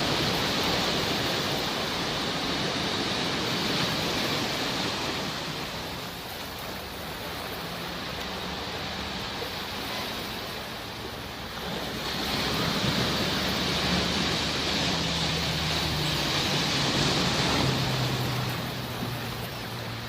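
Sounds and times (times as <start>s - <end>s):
sea waves washing onto shore: 0.0s - 20.0s.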